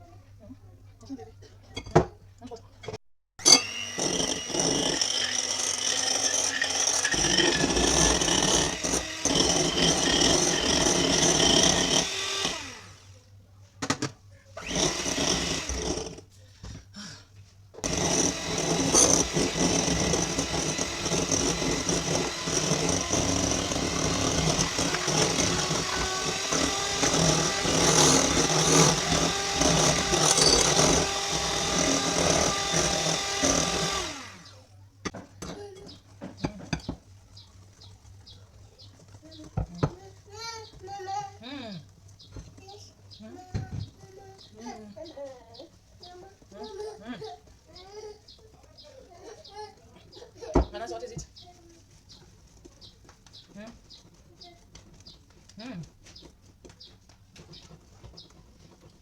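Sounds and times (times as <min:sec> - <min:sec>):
electric mixer whining: 0:03.4 - 0:13.2, 0:14.6 - 0:16.2, 0:17.8 - 0:34.6.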